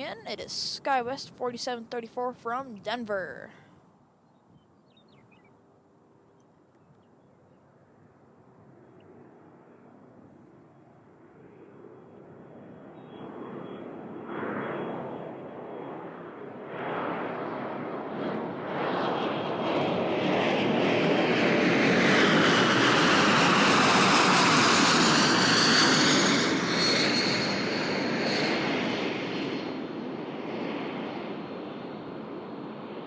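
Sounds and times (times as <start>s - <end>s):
jet plane passing: 7.7s - 33.0s.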